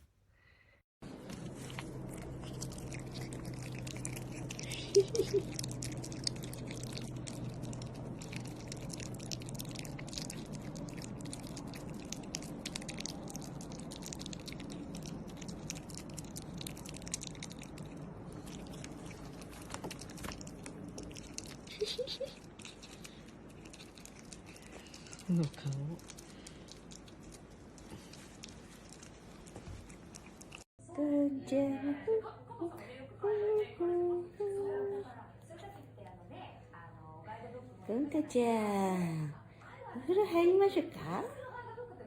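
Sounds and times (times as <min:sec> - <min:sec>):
otter chewing food: 0:01.0 - 0:30.7.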